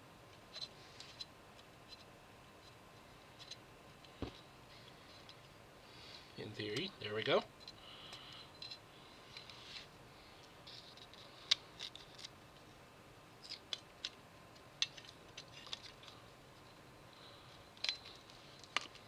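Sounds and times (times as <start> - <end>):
scratchy rustles of handling: 8.7 - 12.8
light clicks of plastic parts: 13.4 - 16.8, 17.4 - 19.0.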